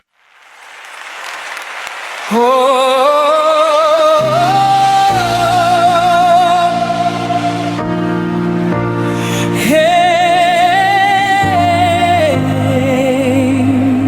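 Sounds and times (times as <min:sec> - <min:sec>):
airy synth swell: 0:02.4 - 0:14.0
sustained low chords: 0:04.2 - 0:14.0.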